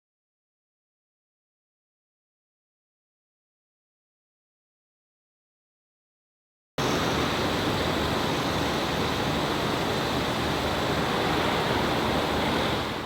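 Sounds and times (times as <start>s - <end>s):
steady rushing noise: 6.8s - 13.0s.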